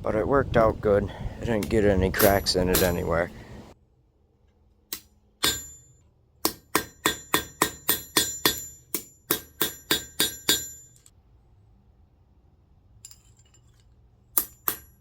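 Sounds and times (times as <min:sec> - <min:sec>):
hammer striking steel on anvil: 0:02.2 - 0:03.2, 0:04.9 - 0:11.1, 0:14.4 - 0:15.0.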